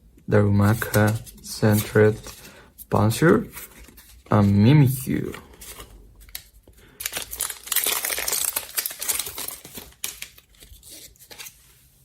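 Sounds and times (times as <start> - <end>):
foil wrapper crinkling: 5.1 - 11.6.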